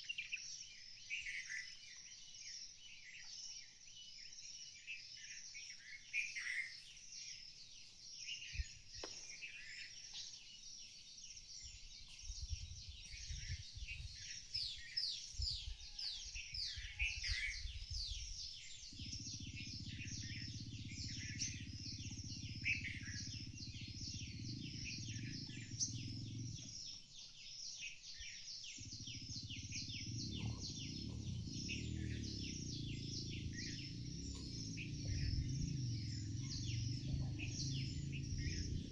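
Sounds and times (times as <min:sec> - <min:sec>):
flock of birds chirping: 0:00.0 - 0:38.9
low rumble: 0:18.5 - 0:26.9, 0:28.7 - 0:38.9.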